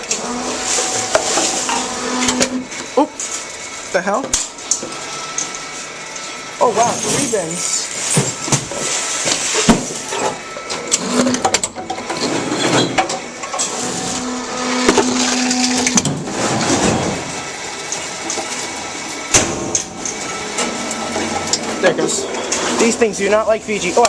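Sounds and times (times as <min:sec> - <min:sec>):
motor hum: 0:00.0 - 0:24.0
bottle clattering and crunching: 0:06.7 - 0:13.2.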